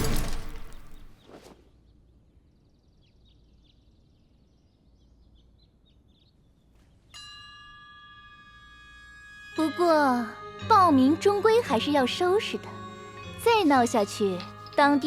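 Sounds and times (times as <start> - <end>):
small bird chirps: 1.2 - 6.7
chime-like ringing tones: 7.2 - 14.7.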